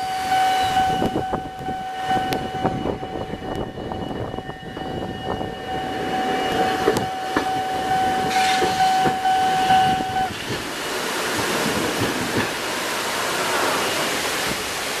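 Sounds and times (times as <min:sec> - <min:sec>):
level crossing warning bell: 0:00.0 - 0:10.3
train running on rails: 0:00.0 - 0:15.0.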